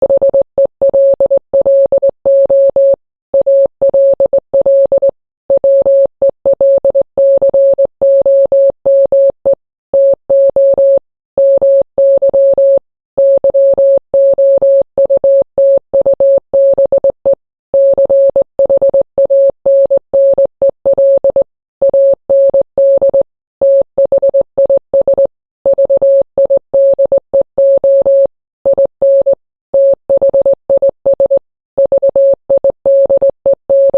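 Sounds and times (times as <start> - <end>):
morse code beeps: 17.8 - 33.9.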